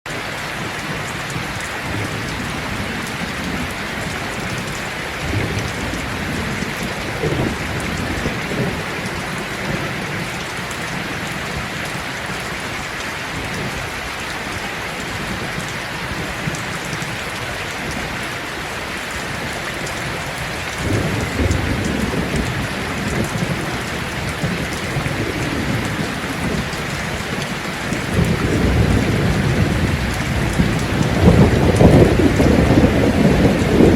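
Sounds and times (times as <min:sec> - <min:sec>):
heavy rain falling: 0:00.1 - 0:33.9
low thunder rumbling: 0:00.6 - 0:12.6, 0:19.2 - 0:33.9.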